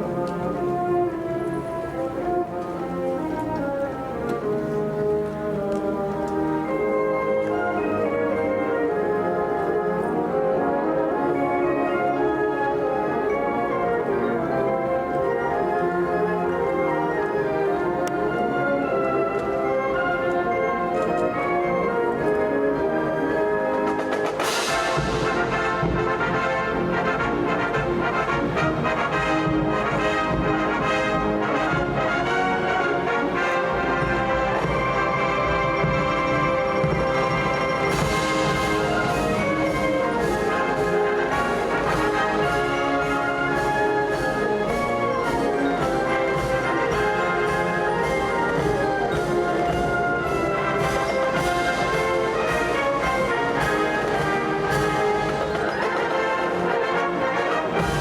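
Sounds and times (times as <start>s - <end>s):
wind band playing: 0.0s - 58.0s
drums keeping a beat: 23.8s - 32.1s, 33.8s - 56.3s, 57.7s - 58.0s.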